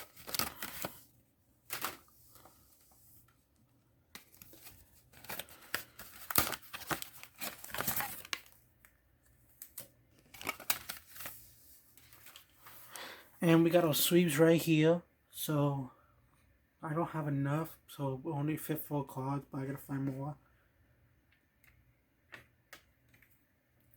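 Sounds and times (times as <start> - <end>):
packaging crinkling and tearing: 0.0 - 1.1, 4.2 - 8.6, 9.5 - 12.5.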